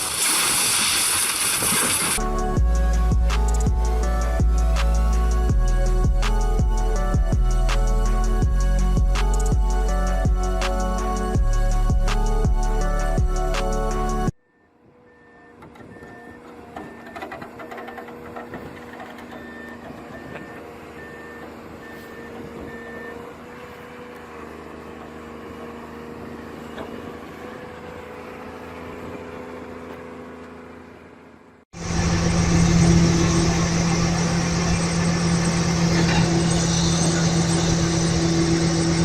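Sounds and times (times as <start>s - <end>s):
loud diesel engine: 2.2s - 14.3s, 14.9s - 39.0s
reversing alarm beeping: 14.4s - 23.3s, 32.0s - 39.0s
machine engine running: 31.8s - 39.0s.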